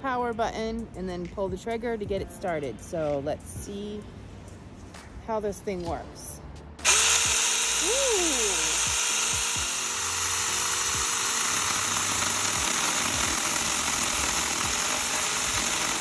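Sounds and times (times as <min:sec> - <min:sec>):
electric chainsaw whirring: 0:06.8 - 0:16.0.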